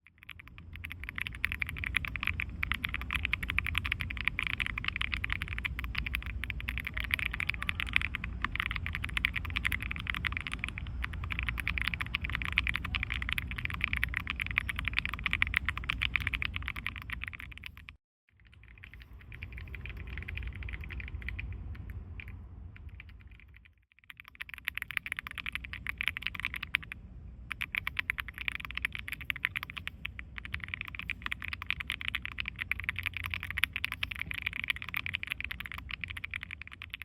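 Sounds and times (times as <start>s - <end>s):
rapid mechanical keyboard typing: 0.0s - 37.0s
low rumble: 0.3s - 23.8s.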